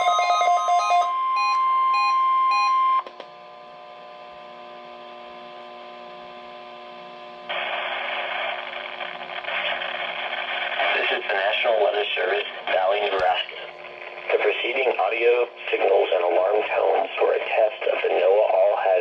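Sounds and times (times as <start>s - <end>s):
steady alarm tone: 0.0s - 3.0s
warbling multi-tone alert: 0.0s - 3.0s
faint hum: 0.0s - 19.0s.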